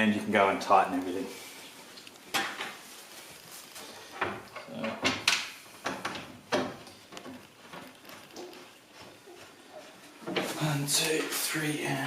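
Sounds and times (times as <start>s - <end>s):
wooden parts scraping: 1.9s - 11.4s
wooden parts knocking and clattering: 4.1s - 10.6s.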